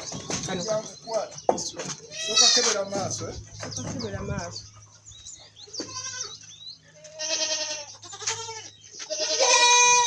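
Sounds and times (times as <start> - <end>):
goats bleating: 2.0 - 3.0, 5.8 - 10.0.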